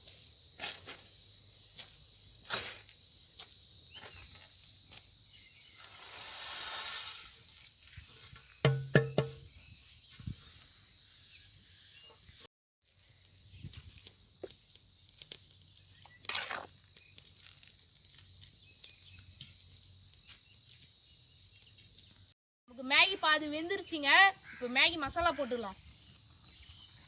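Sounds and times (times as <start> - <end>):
crickets chirping: 0.0 - 27.0
short knocks: 8.7 - 9.5.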